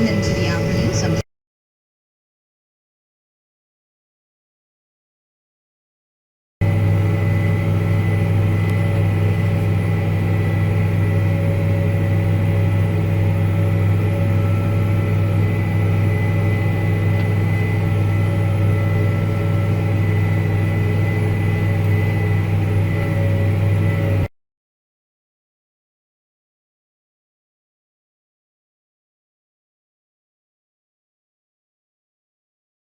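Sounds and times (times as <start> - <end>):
tractor engine running under load: 6.6 - 24.3.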